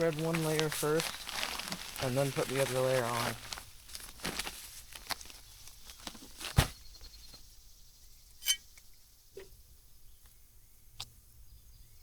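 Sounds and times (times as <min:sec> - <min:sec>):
gravel clicks and scrapes: 0:00.0 - 0:06.8.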